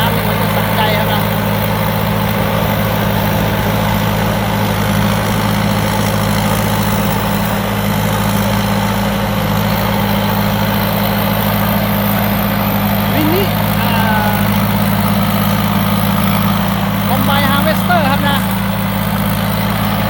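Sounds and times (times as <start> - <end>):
combine harvester running: 0.0 - 20.0.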